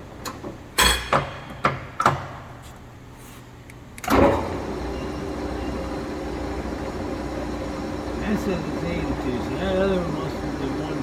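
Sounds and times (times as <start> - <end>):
lathe spindle and gearing running: 4.1 - 11.0.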